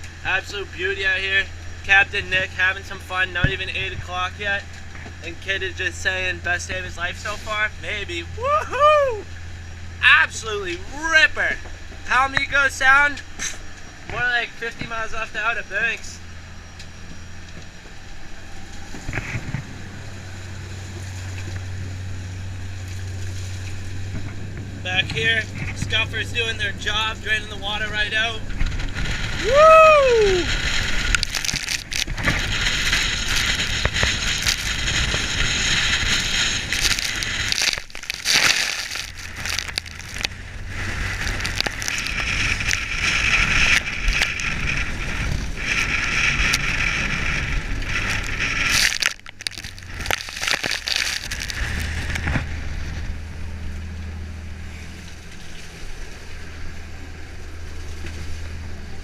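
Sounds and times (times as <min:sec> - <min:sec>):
diesel boat engine drone: 0:00.0 - 0:59.0
person shouting: 0:08.4 - 0:09.2, 0:29.4 - 0:30.5
sea water splashing against boat: 0:30.4 - 0:53.4.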